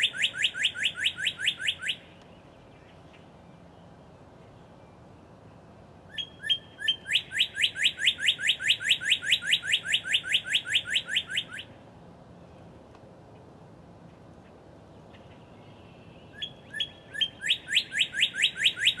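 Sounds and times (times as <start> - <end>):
cardinal whistling song: 0.0 - 2.2, 6.1 - 11.8, 16.2 - 19.0.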